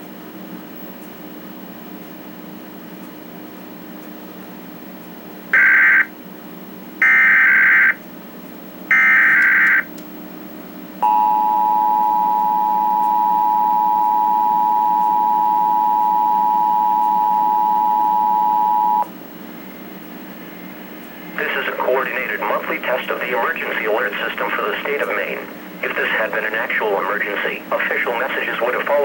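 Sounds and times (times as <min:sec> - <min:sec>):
data tone bursts: 0:11.0 - 0:19.1
two-tone attention signal: 0:11.0 - 0:19.1.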